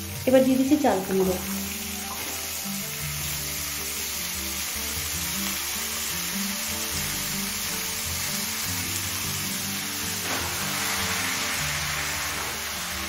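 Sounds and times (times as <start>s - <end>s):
background music: 0.0s - 13.0s
food sizzling in oil: 0.0s - 13.0s.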